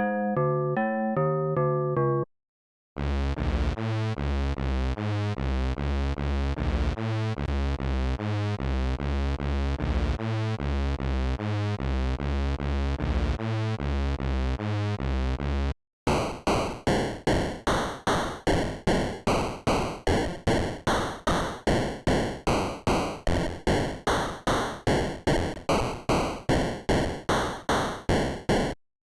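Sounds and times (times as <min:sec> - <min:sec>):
synth loop with bass line: 0:16.1 - 0:28.7.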